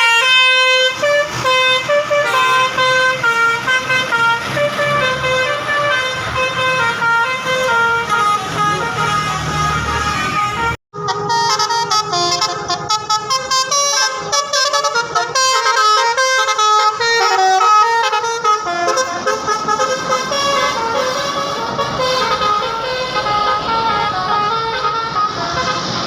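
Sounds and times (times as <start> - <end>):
multi-tone musical bus horn: 0.0 - 26.0.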